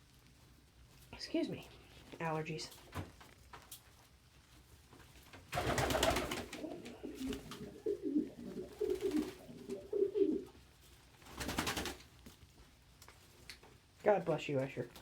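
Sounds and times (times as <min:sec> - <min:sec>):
wing flurry: 0:05.5 - 0:10.4
pigeons cooing: 0:05.6 - 0:10.6.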